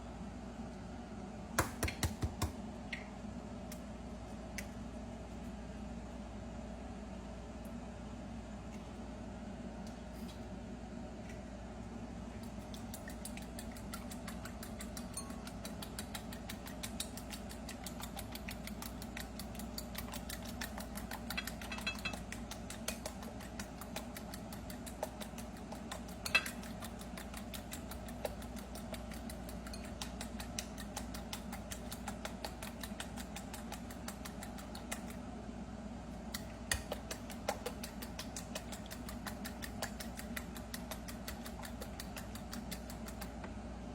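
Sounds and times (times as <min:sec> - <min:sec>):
fan-like hum: 0:00.0 - 0:43.9.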